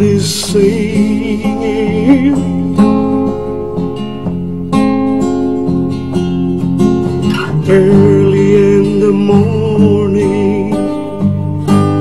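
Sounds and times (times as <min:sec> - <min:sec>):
person singing: 0:00.0 - 0:02.6, 0:07.2 - 0:11.2
acoustic guitar strumming: 0:00.0 - 0:12.0.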